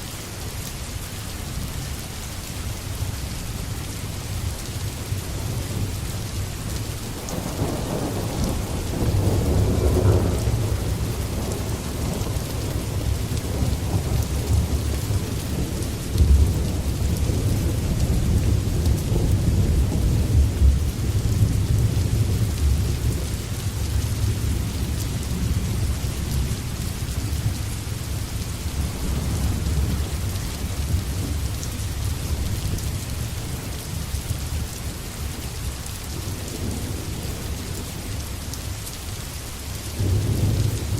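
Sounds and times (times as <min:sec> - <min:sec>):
steady rain: 0:00.0 - 0:40.9
low rolling thunder: 0:07.2 - 0:34.1, 0:36.2 - 0:38.0, 0:40.0 - 0:40.9.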